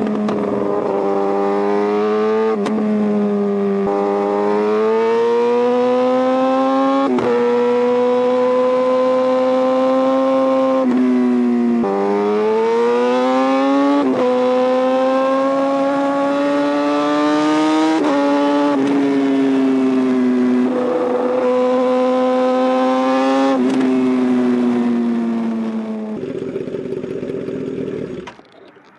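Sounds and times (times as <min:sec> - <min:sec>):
motorcycle engine revving hard: 0:00.0 - 0:28.3.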